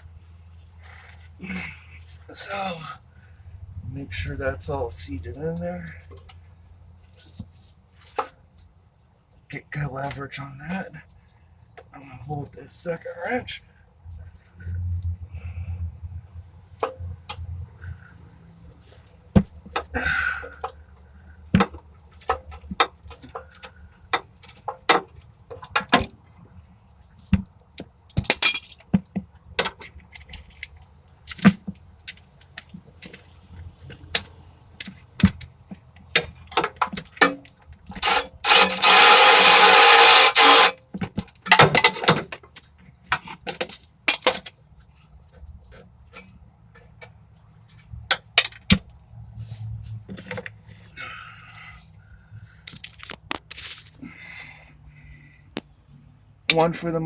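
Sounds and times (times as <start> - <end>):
wrenches clinking on metal: 28.1 - 28.9, 36.1 - 44.6
loud harsh noise: 38.0 - 40.8.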